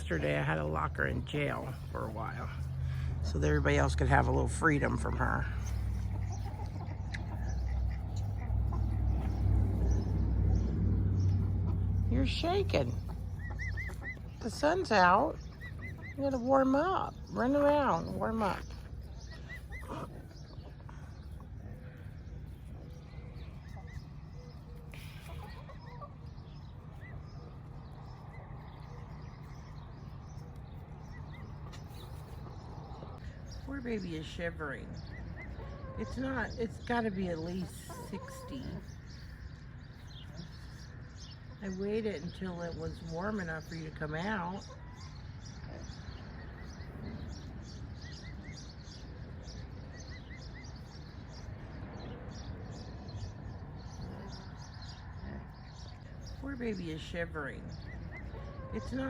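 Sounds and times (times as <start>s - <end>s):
birds chirping: 0.0s - 59.0s
steady low rumble: 0.0s - 59.0s
higher arched bird calls: 4.9s - 33.6s.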